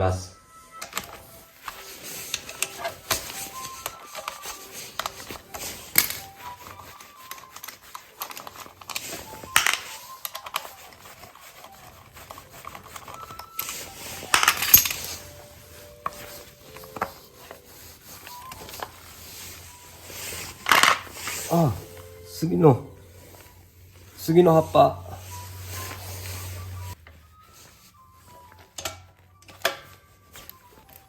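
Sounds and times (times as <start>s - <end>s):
hand tools clattering: 14.2s - 15.3s.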